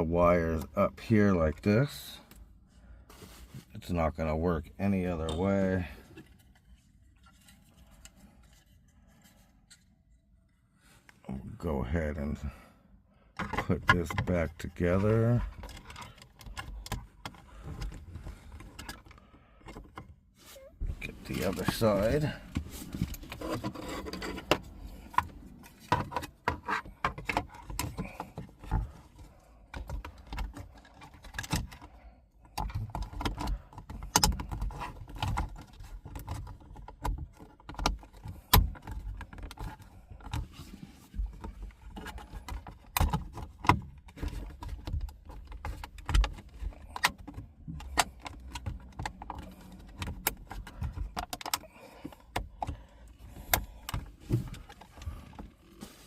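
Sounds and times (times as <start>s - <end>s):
plastic trim clicking and rattling: 41.2s - 55.6s.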